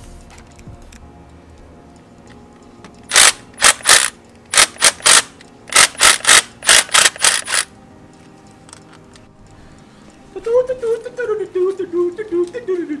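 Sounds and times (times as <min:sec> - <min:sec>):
impact gun bursts: 0:03.1 - 0:07.7.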